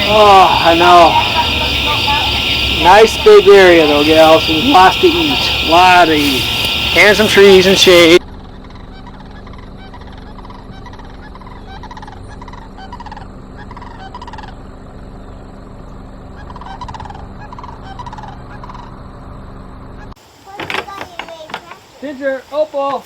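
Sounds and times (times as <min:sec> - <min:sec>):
farm fowl calling: 0:00.0 - 0:15.0, 0:16.3 - 0:19.0
steady low hum: 0:00.0 - 0:20.2.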